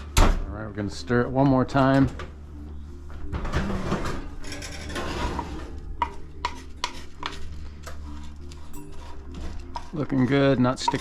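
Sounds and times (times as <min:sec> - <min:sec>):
spoon scraping baking pan: 0:04.4 - 0:11.0
spoon tapping pan: 0:06.0 - 0:07.4, 0:10.8 - 0:11.0.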